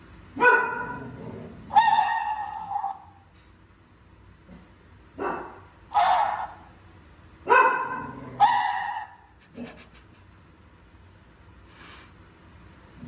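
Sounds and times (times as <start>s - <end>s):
dog barking: 0.4s - 1.1s, 1.7s - 3.2s, 5.2s - 6.7s, 7.4s - 9.8s.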